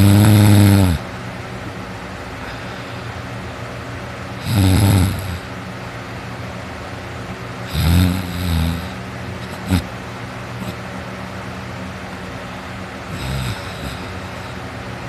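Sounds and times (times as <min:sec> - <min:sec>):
person snoring heavily: 0:00.0 - 0:01.1, 0:02.4 - 0:03.2, 0:04.4 - 0:05.5, 0:07.6 - 0:09.9, 0:10.6 - 0:10.8, 0:13.0 - 0:14.7.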